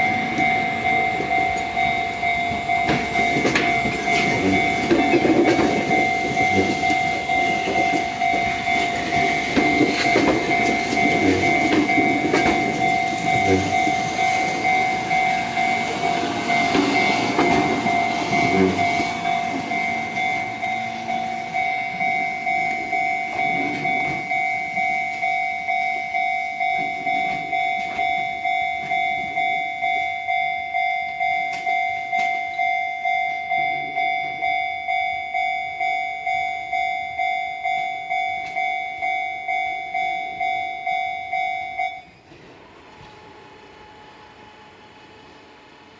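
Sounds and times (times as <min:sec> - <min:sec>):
train wheels clattering: 0:00.0 - 0:25.5
level crossing warning bell: 0:00.0 - 0:45.9.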